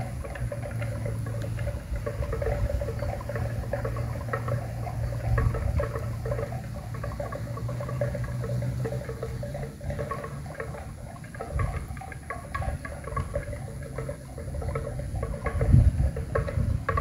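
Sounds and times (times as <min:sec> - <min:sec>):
animal bells clanking: 0:00.0 - 0:17.0
low steady hum: 0:00.0 - 0:17.0.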